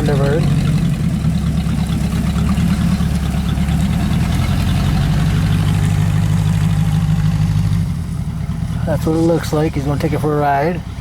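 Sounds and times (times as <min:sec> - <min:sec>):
car engine idling: 0:00.0 - 0:11.0.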